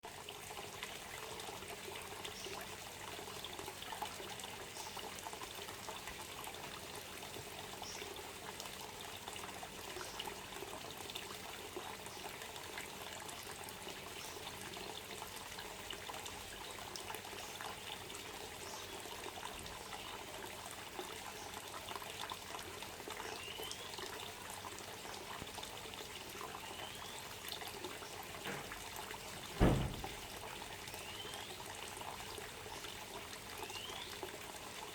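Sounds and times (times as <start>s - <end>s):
water trickling and pouring: 0.1s - 34.9s
thump: 28.5s - 28.8s, 29.4s - 30.3s.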